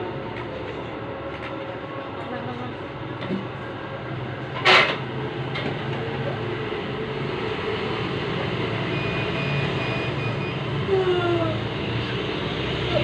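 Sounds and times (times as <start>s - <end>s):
low rumbling vehicle noise: 0.0s - 13.0s.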